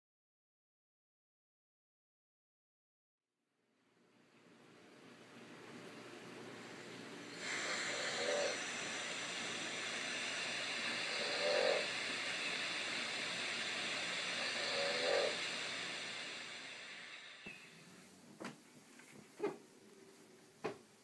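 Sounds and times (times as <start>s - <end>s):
baby monitor hiss: 6.5s - 18.2s
baby snore-like breaths: 7.3s - 17.5s.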